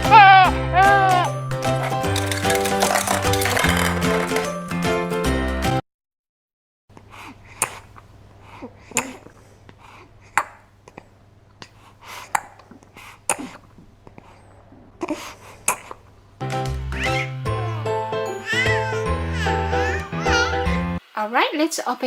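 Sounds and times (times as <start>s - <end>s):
children's music: 0.0s - 5.8s, 16.4s - 21.6s
small objects rustling: 1.7s - 4.8s.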